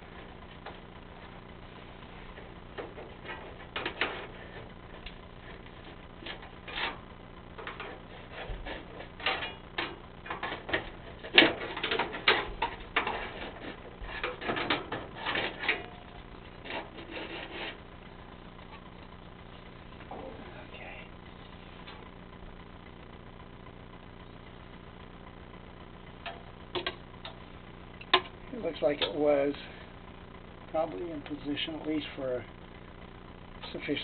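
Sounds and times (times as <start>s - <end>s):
low steady hum: 0.0s - 34.0s
metal clicking and rattling: 8.8s - 17.0s.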